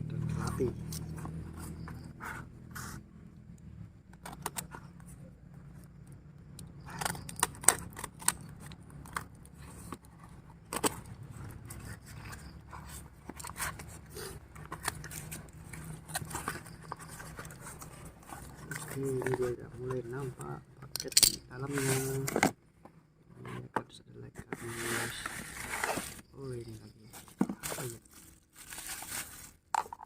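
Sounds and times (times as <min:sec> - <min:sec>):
package being cut and torn open: 0:06.8 - 0:09.9
packaging crinkling: 0:27.2 - 0:30.0.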